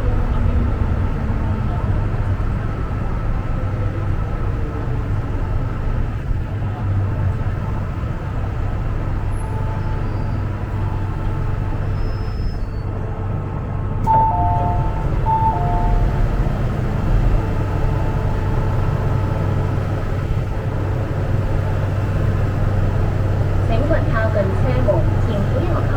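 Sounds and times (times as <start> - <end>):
train wheels rumbling on rail: 0.0 - 25.9
short high wheel squeals: 9.3 - 13.0, 14.0 - 16.5.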